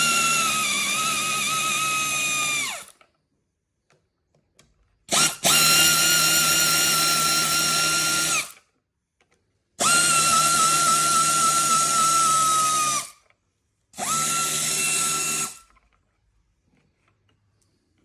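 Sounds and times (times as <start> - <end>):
electric power tool whining: 0.0 - 3.0, 5.1 - 8.6, 9.8 - 13.2, 14.0 - 15.7.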